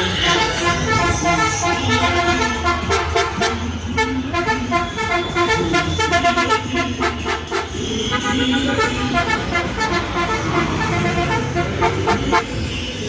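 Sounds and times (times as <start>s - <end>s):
musical car horn tune: 0.0s - 12.5s.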